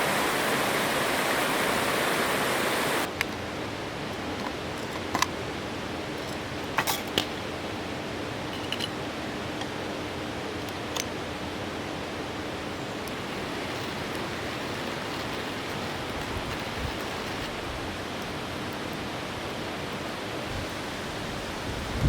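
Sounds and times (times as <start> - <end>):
river flowing over rocks: 0.0 - 3.1.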